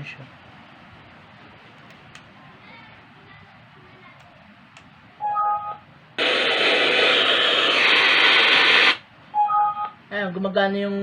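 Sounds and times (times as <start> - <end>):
radio static hiss: 6.2 - 9.0.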